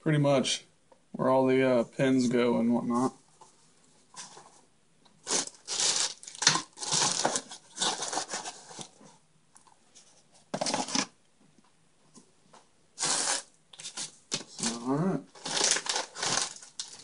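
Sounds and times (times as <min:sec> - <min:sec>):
packaging crinkling: 0:05.2 - 0:09.0, 0:13.3 - 0:17.0.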